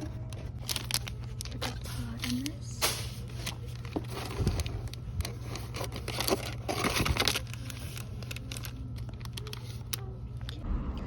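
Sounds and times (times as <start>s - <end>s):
packaging rustling and crinkling: 0.0s - 10.6s
steady low hum: 7.4s - 11.0s.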